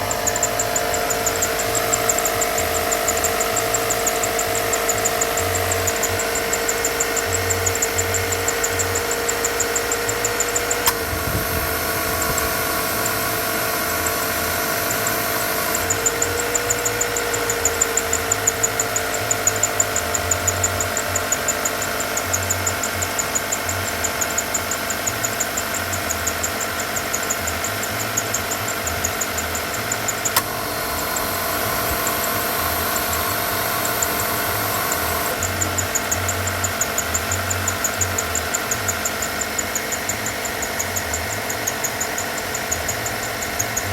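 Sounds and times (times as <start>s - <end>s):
low hum: 0.0s - 24.6s
car engine running: 0.0s - 43.9s
fast high ticking: 0.0s - 43.9s
whining tones: 0.0s - 43.9s.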